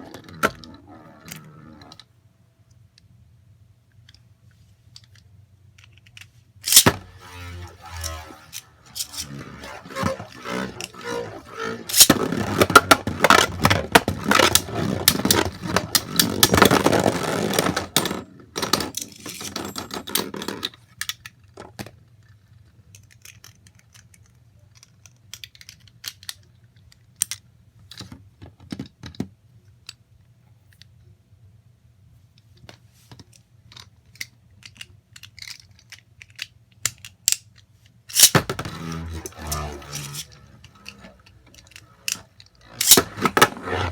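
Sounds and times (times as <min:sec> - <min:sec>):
small hard objects rattling: 0:06.7 - 0:13.2, 0:39.2 - 0:43.9.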